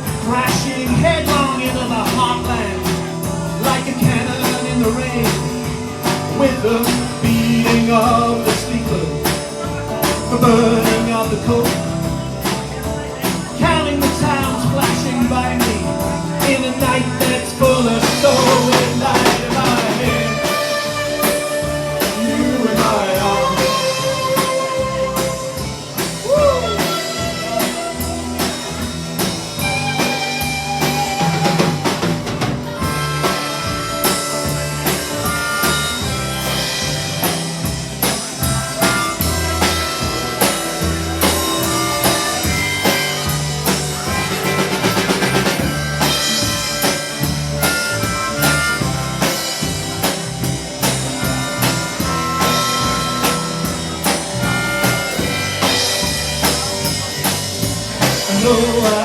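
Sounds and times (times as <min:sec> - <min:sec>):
drum kit with rimshots: 0:00.0 - 0:59.0.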